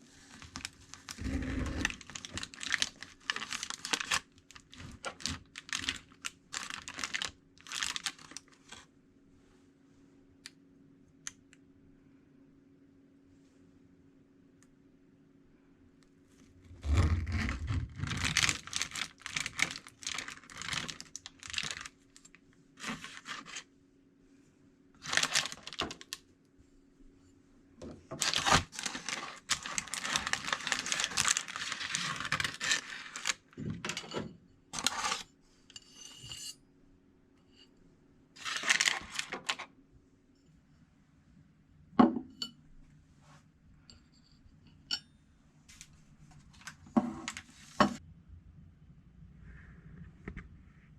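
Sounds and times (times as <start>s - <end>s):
faint steady hum: 0.0s - 50.9s
rustling and scraping: 16.3s - 23.7s, 27.9s - 36.6s.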